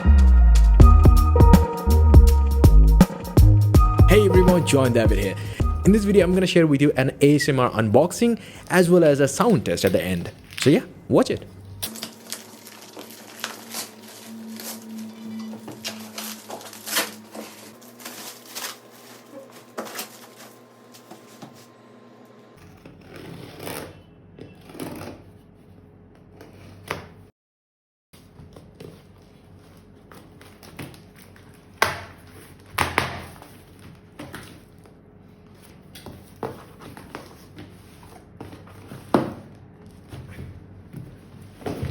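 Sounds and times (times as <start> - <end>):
packaging rustling and clicking: 11.8 - 20.6.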